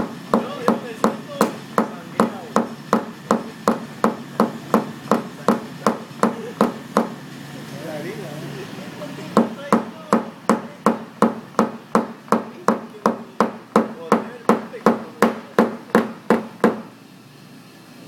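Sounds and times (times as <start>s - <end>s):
hammer tapping with ringing strikes: 0.3s - 7.2s, 9.4s - 16.9s.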